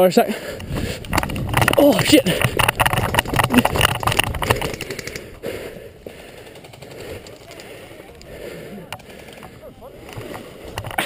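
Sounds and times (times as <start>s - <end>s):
airsoft guns firing bursts: 6.2s - 7.8s.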